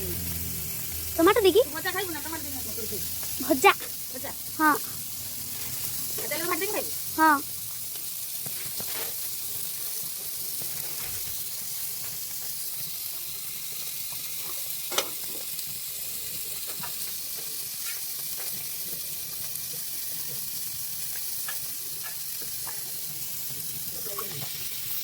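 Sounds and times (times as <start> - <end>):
oil sizzling in a pan: 0.0 - 25.0
spatula stirring and scraping: 4.9 - 6.8.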